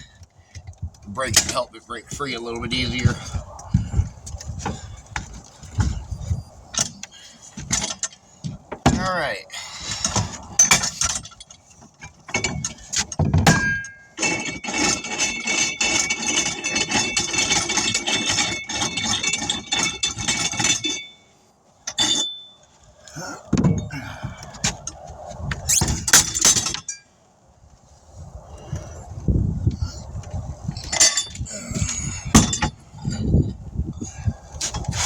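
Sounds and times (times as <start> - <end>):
metal clinking and scraping: 0.0 - 27.2, 30.3 - 35.0
squealing metal on rubber: 25.5 - 26.7.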